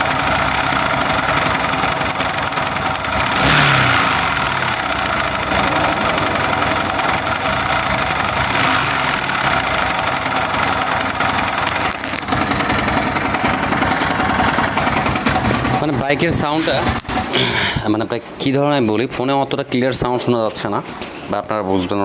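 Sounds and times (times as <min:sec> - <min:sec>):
motorcycle engine knocking: 0:00.0 - 0:17.4.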